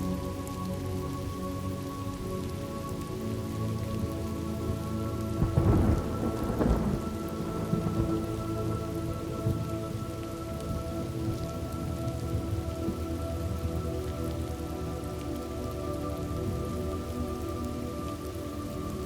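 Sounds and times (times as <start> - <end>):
steady rain falling: 0.0 - 19.0
thunder rumbling: 5.4 - 14.4.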